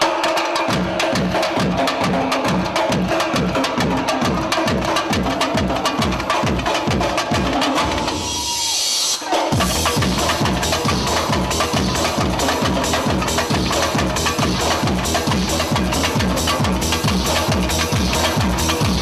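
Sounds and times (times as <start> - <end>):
electronic samba beat: 0.0 - 19.0
deep bass-drum strokes: 9.6 - 19.0.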